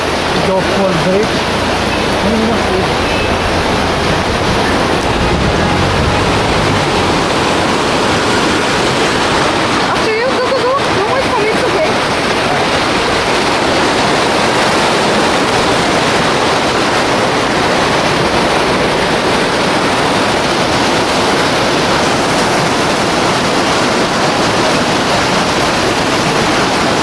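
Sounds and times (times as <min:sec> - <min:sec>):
waterfall rushing: 0:00.0 - 0:27.0.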